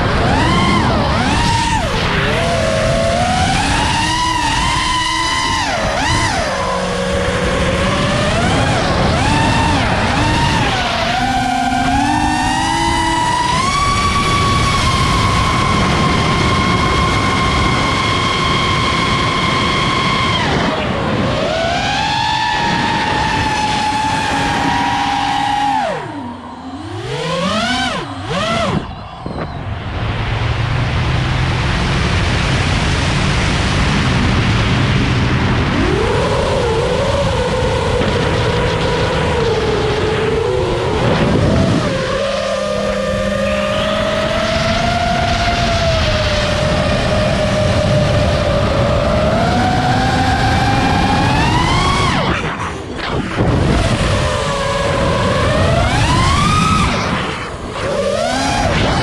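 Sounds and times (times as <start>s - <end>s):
drone motors whining: 0.0s - 59.0s
wind rushing: 22.7s - 40.0s, 40.6s - 59.0s.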